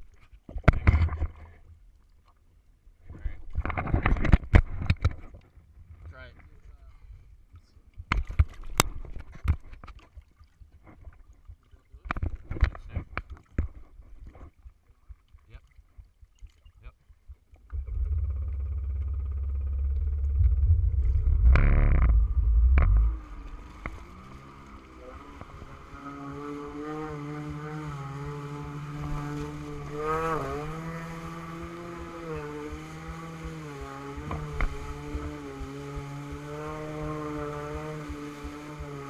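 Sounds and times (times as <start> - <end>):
jet ski engine revving: 17.7 - 39.0
loud low rumble: 17.8 - 25.2.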